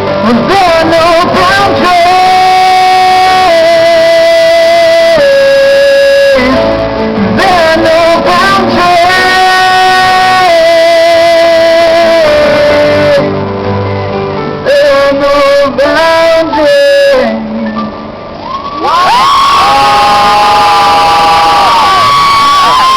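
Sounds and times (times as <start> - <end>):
man singing long notes: 0.0 - 13.4, 14.6 - 17.9
acoustic guitar and band: 0.0 - 19.4.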